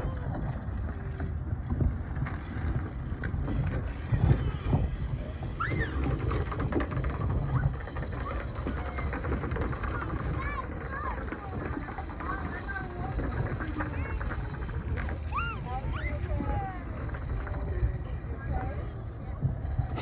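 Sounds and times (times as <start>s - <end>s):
wind buffeting microphone: 0.0s - 20.0s
distant children shouting: 3.5s - 17.6s.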